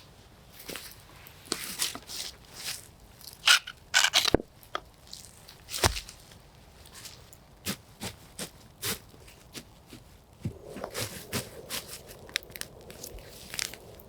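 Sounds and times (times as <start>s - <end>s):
dry twigs crunching and cracking: 10.4s - 14.0s.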